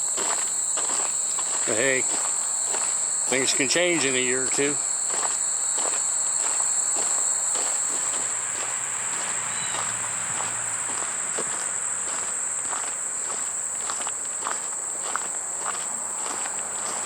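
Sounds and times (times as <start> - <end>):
crickets trilling: 0.0 - 17.0
footsteps scuffing on a trail: 0.0 - 17.0.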